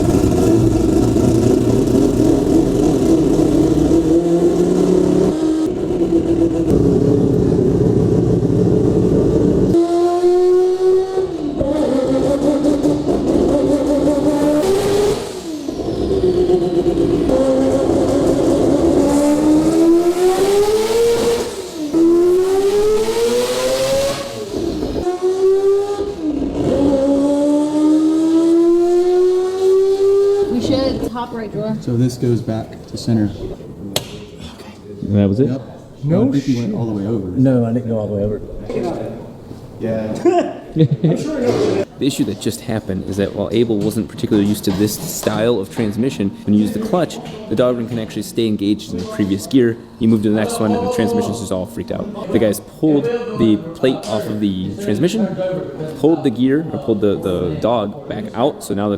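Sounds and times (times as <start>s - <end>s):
rotary engine revving on dyno: 0.0s - 31.1s.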